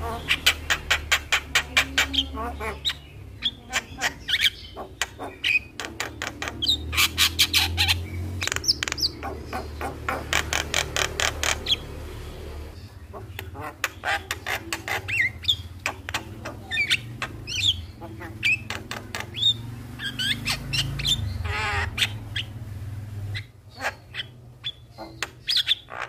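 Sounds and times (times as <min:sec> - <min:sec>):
myna clicking chatter: 0:00.0 - 0:12.0, 0:13.0 - 0:20.6.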